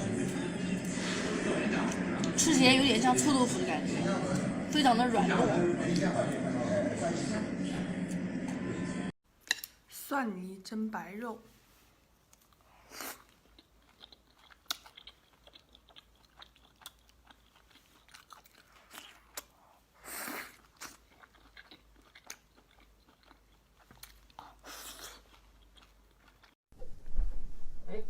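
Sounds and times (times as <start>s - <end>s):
person chewing and eating: 12.3s - 26.6s.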